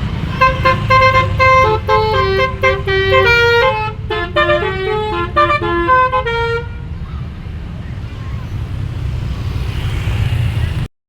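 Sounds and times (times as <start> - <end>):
low engine rumble: 0.0 - 10.9
vehicle melody horn: 0.2 - 6.9.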